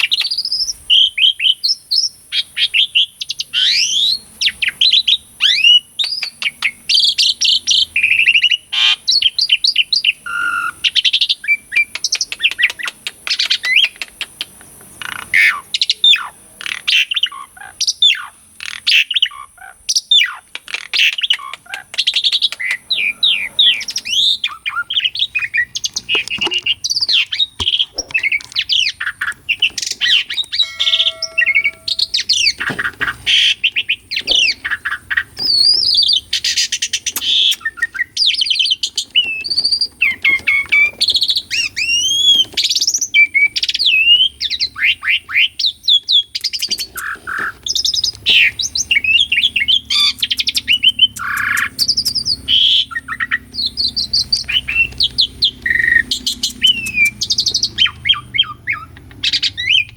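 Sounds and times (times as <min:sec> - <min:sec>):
starling song: 0:25.2 - 0:33.5
steady whistled note: 0:30.4 - 0:32.7.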